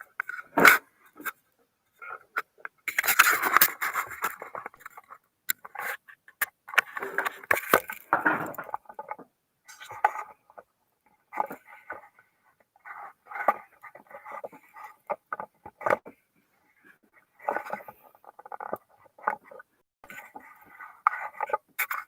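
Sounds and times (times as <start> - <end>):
objects rustling and scraping on desk: 11.3 - 16.2, 17.0 - 22.0.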